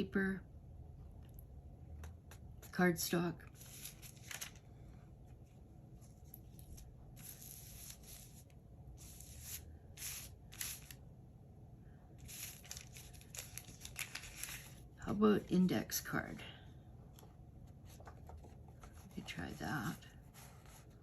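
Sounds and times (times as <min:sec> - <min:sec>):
paper rustling and sliding: 0:03.5 - 0:11.0, 0:12.2 - 0:14.8.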